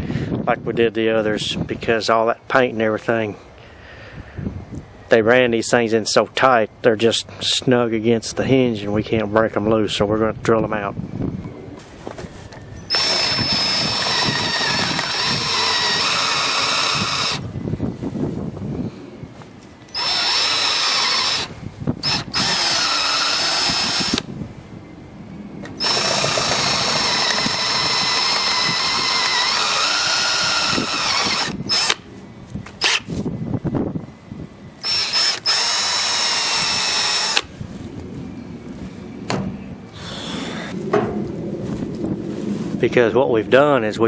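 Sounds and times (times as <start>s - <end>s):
power drill drilling: 12.9s - 17.4s, 19.9s - 24.2s, 25.8s - 32.0s, 32.8s - 33.0s, 34.8s - 37.5s, 40.0s - 40.7s.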